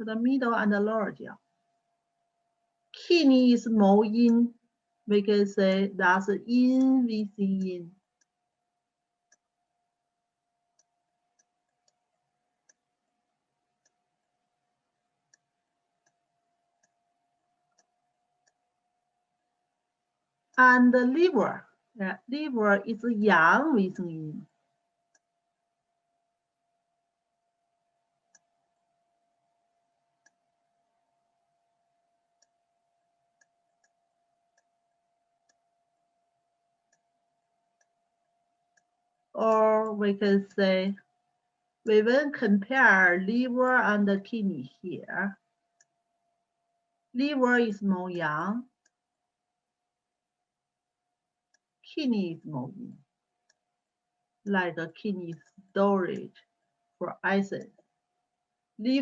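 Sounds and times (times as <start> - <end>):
faint steady hum: 0.0 - 59.0
thin steady whine: 0.0 - 59.0
faint clicks: 9.3 - 9.6, 36.8 - 39.0.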